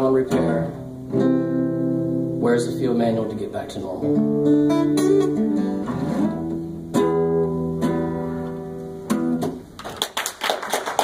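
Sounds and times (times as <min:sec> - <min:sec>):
acoustic guitar strumming chords: 0:00.0 - 0:09.8
applause: 0:09.8 - 0:11.0.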